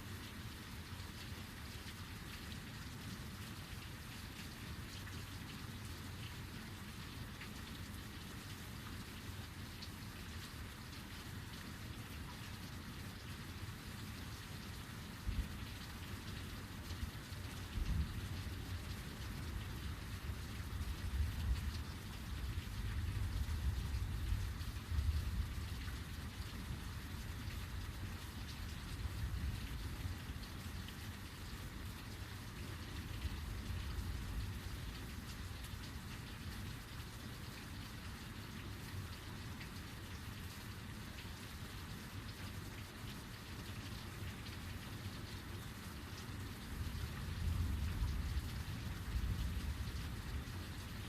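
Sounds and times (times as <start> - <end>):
heavy rain falling: 0.0 - 51.0.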